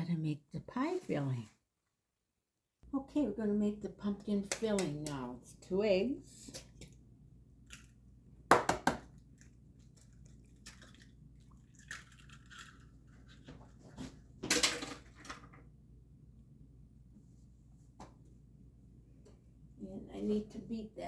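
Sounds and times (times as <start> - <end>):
eggs cracking against bowl: 7.6 - 13.1.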